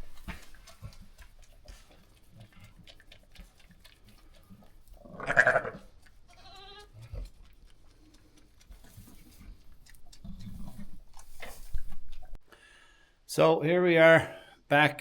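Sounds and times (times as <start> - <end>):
sheep bleating: 5.1 - 7.0.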